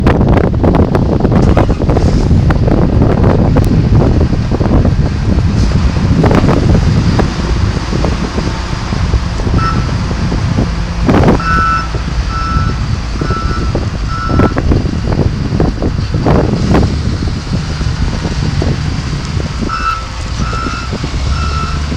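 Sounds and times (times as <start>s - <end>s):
wheel loader diesel engine running: 0.0s - 21.9s
wind gusts on microphone: 0.0s - 21.9s
reversing alarm beeping: 9.5s - 10.0s, 11.3s - 14.6s, 19.7s - 21.9s.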